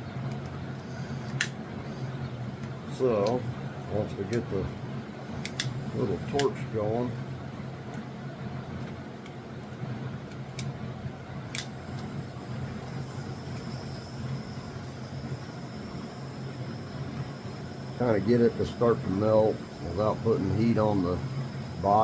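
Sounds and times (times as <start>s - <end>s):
low steady hum: 0.0s - 22.0s
torch burning with hiss: 0.3s - 22.0s
sharp clicks: 5.4s - 6.6s, 11.5s - 12.1s.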